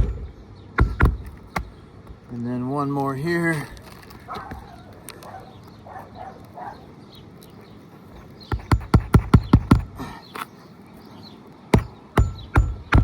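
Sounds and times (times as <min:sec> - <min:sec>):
hammer tapping nail into shingle: 0:00.0 - 0:01.7, 0:08.5 - 0:10.0, 0:11.7 - 0:13.0.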